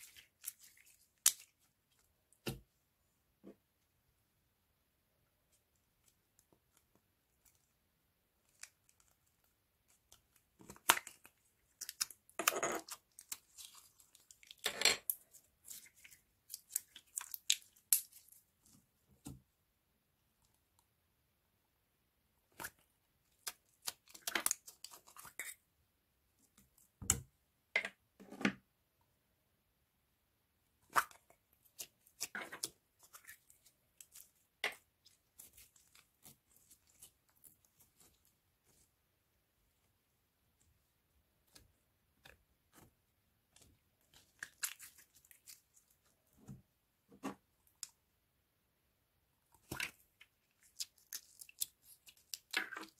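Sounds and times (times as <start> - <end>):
sticky slime crackling: 8.4 - 14.6, 15.3 - 18.4, 30.9 - 38.8, 41.4 - 46.1, 49.6 - 52.9.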